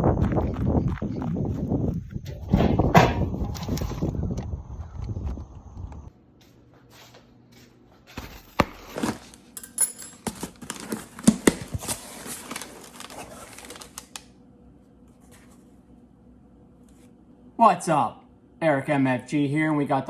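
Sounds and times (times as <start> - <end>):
plastic packaging crinkling and tearing: 10.3 - 14.3.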